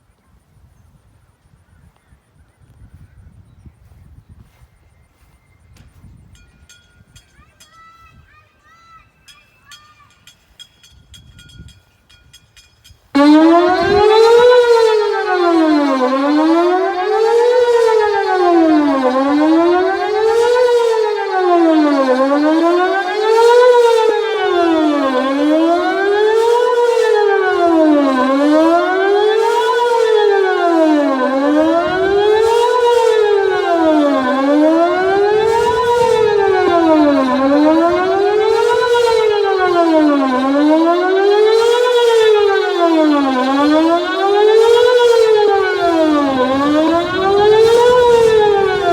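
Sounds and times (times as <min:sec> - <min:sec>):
warning siren wailing: 0:13.2 - 0:48.9.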